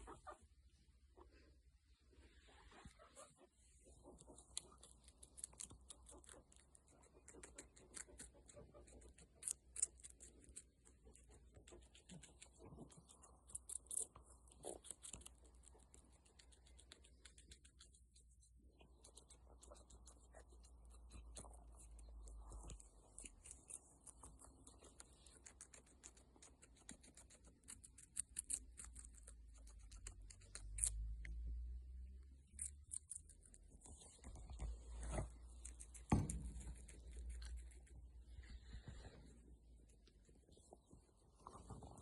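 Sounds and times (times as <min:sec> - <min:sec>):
guinea pig chewing food: 0:03.1 - 0:42.0.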